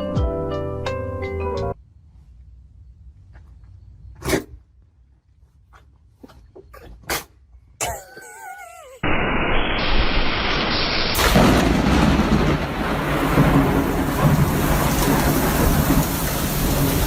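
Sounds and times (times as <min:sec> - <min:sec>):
heavy rain: 0:09.0 - 0:17.0
low thunder rumbling: 0:09.9 - 0:17.0.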